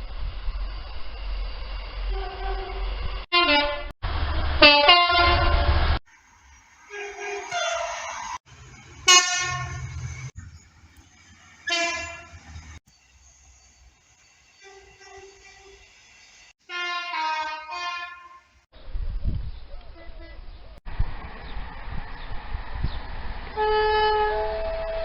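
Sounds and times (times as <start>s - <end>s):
low rumble of trains: 0.0s - 25.0s
train horn blasts: 2.1s - 3.9s, 4.6s - 6.0s, 6.9s - 8.0s, 9.0s - 10.3s, 11.6s - 12.5s, 14.6s - 15.8s, 16.6s - 18.6s, 23.6s - 25.0s.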